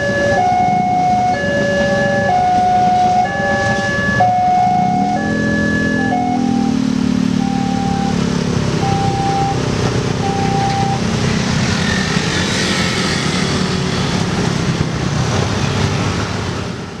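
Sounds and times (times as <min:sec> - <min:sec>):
crossing alarm beeps: 0:00.0 - 0:06.8, 0:07.4 - 0:08.2, 0:08.8 - 0:09.6, 0:10.2 - 0:11.1
road vehicles passing: 0:00.0 - 0:17.0.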